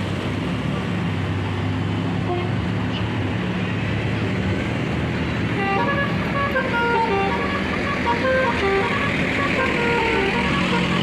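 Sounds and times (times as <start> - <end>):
road traffic: 0.0 - 11.0
multi-tone bus horn tune: 2.2 - 2.6, 5.6 - 11.0
engine running: 4.0 - 11.0.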